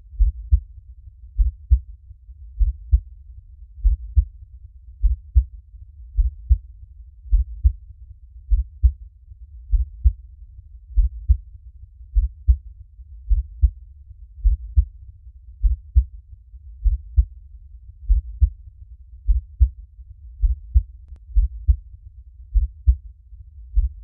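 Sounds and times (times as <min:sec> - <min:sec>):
faint low rumble: 0:00.0 - 0:24.0
heartbeat thumps: 0:00.2 - 0:00.7, 0:01.4 - 0:01.9, 0:02.6 - 0:03.1, 0:03.8 - 0:04.3, 0:05.0 - 0:05.5, 0:06.2 - 0:06.6, 0:07.3 - 0:07.8, 0:08.5 - 0:09.0, 0:09.7 - 0:10.2, 0:10.9 - 0:11.4, 0:12.2 - 0:12.6, 0:13.3 - 0:13.8, 0:14.4 - 0:14.9, 0:15.6 - 0:16.1, 0:16.8 - 0:17.3, 0:18.1 - 0:18.5, 0:19.2 - 0:19.7, 0:20.4 - 0:21.8, 0:22.5 - 0:23.0, 0:23.7 - 0:24.0.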